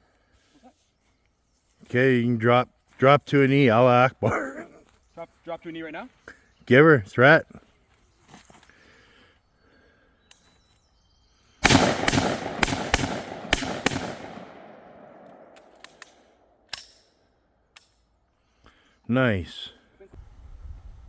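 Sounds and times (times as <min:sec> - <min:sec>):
rapid gunshots with echo: 0:11.6 - 0:16.0
faint gunshot crack: 0:11.6 - 0:16.1.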